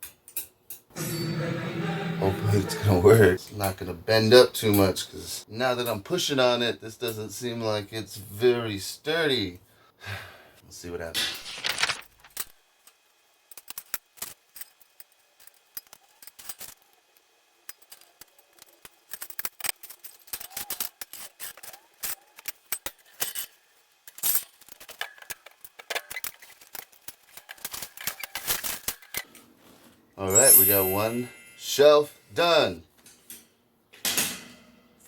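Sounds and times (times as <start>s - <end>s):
metal shelving parts clinking: 30.2s - 35.0s.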